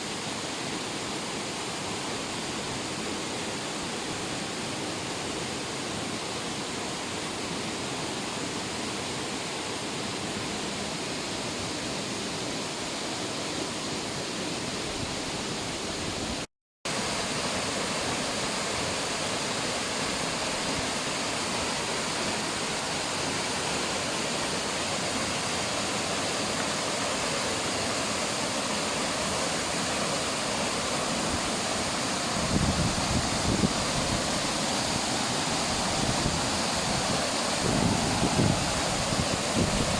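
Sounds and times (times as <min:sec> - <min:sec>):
waterfall rushing: 0:00.0 - 0:39.9
wind buffeting microphone: 0:32.3 - 0:34.5, 0:35.6 - 0:39.9.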